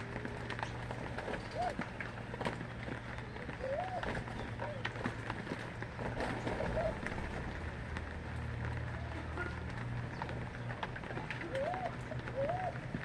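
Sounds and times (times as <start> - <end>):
bird calls: 0.0 - 5.1, 6.2 - 7.2, 8.9 - 13.0.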